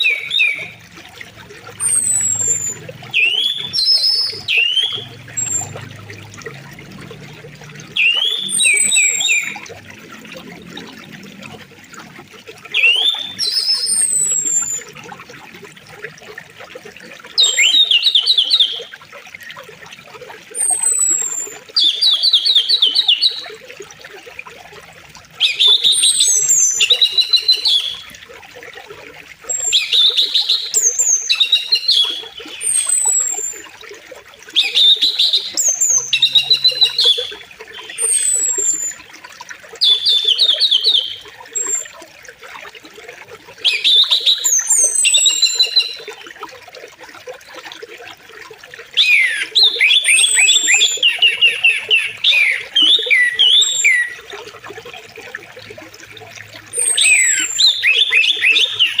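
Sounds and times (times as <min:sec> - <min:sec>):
songbird singing with trills: 0:00.0 - 0:00.8, 0:01.8 - 0:06.0, 0:07.9 - 0:09.6, 0:12.7 - 0:14.9, 0:17.4 - 0:18.9, 0:29.5 - 0:33.6, 0:34.6 - 0:39.0, 0:43.6 - 0:46.1, 0:49.0 - 0:54.3, 0:56.8 - 0:59.0.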